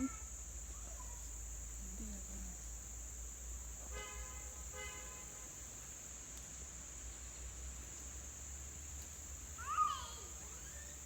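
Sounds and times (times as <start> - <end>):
insects trilling: 0.0 - 3.7.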